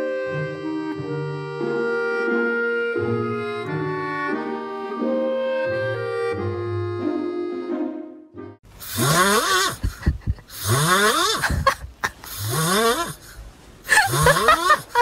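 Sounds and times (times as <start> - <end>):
animal snoring loudly: 8.8 - 9.8, 10.5 - 11.4, 12.3 - 13.2.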